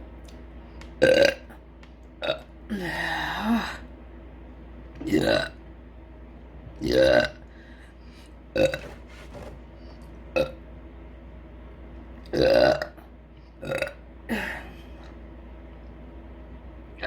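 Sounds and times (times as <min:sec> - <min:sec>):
woman burping: 0:05.0 - 0:05.6, 0:13.6 - 0:14.9.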